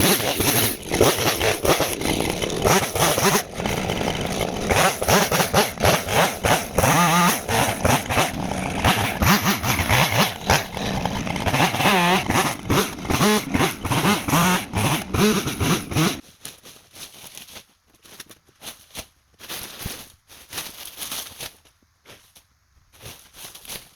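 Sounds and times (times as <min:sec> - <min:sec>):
chainsaw running and cutting: 0:00.0 - 0:16.2.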